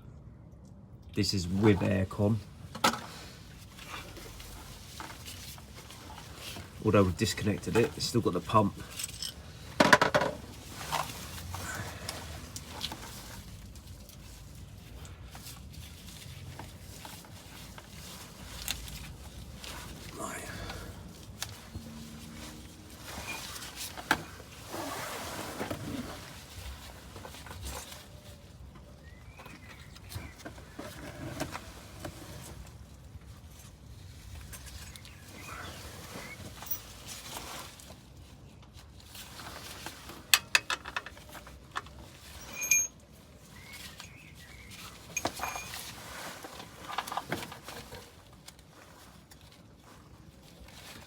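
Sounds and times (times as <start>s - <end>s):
tools clinking on metal: 8.8s - 9.4s, 42.4s - 43.0s, 45.1s - 45.8s.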